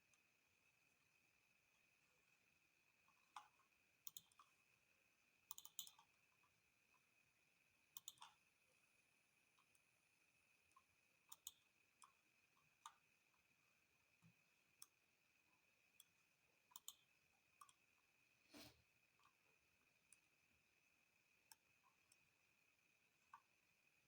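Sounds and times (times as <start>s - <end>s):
faint irregular clicks: 1.8s - 7.2s, 7.9s - 10.0s, 10.6s - 18.1s, 19.1s - 20.4s, 21.4s - 22.4s, 23.1s - 23.7s.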